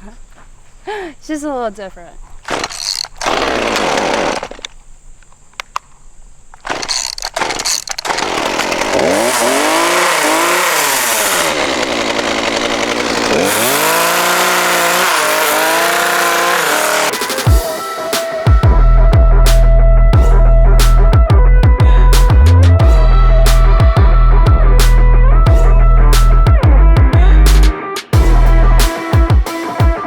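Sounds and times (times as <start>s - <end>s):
chainsaw cutting: 2.4s - 4.8s, 6.6s - 17.5s.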